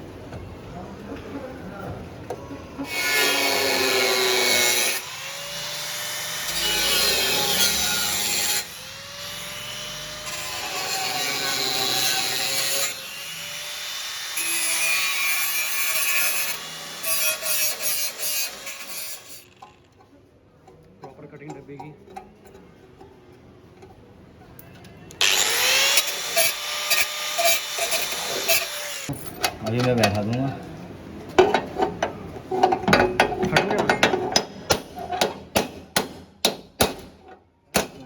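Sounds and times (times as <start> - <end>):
power tool cutting steel: 2.8 - 19.8, 25.2 - 29.1.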